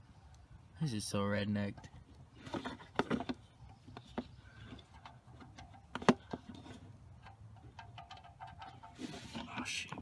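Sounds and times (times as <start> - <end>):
hand tools clicking and knocking: 2.5 - 10.0.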